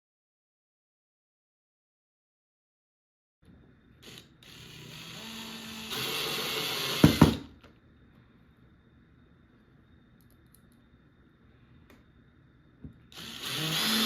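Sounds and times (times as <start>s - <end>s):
power drill driving a screw: 4.0s - 7.5s, 13.1s - 14.0s.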